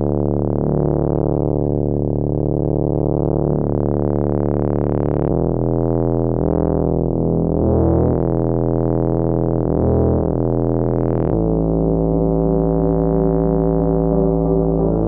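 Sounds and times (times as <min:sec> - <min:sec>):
mellow synthesizer chords: 0:00.0 - 0:15.0.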